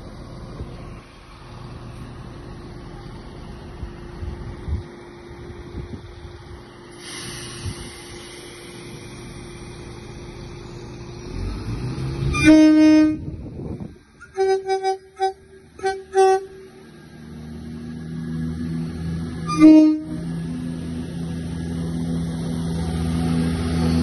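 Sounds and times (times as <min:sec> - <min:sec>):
steady hum and rumble: 0:00.0 - 0:24.0
train horn blast: 0:12.2 - 0:13.4, 0:14.2 - 0:16.8, 0:19.4 - 0:20.4
short train horn toots: 0:12.3 - 0:13.4, 0:14.2 - 0:16.8, 0:19.4 - 0:20.4.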